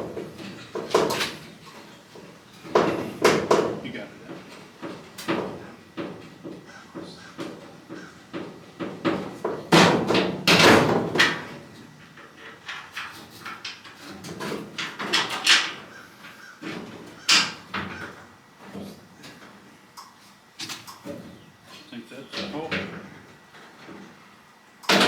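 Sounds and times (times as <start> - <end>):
metal panel clanking and rattling: 2.6 - 15.9.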